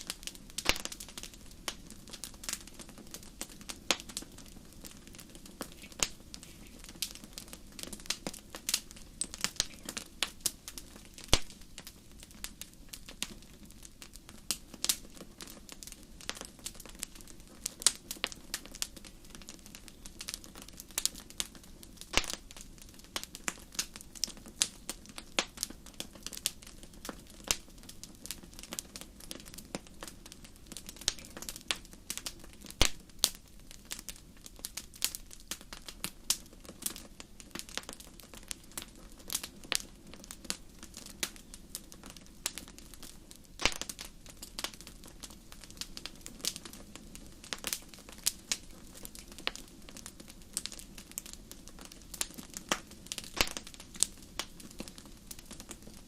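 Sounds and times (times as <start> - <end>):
fire crackling and popping: 0.0 - 56.0
rustle of flames: 0.0 - 56.0.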